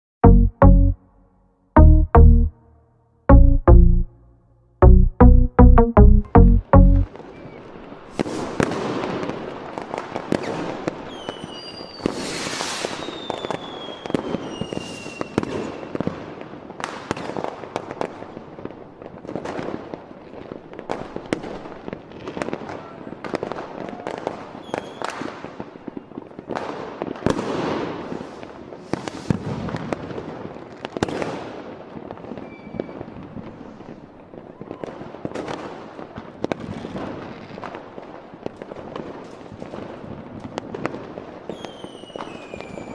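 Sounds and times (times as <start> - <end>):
fireworks bangs and crackling: 7.2 - 42.9
whistling firework shells: 10.4 - 16.0, 41.5 - 42.9.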